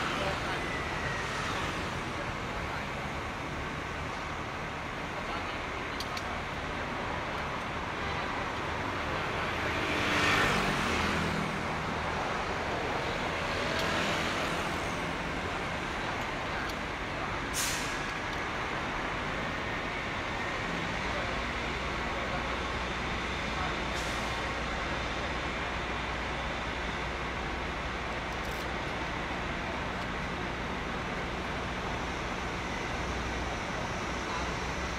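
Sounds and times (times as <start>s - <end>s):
heavy vehicle engine running: 0.0s - 34.9s
air release hiss: 17.5s - 18.1s.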